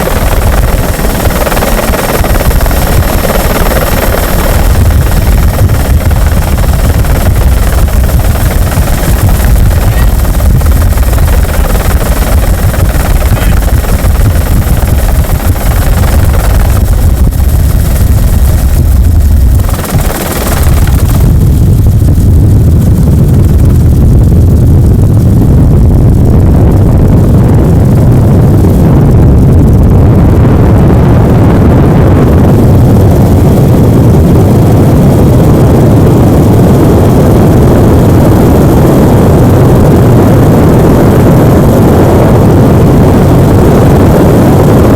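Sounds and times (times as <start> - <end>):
helicopter rotor and engine: 0.0 - 44.9.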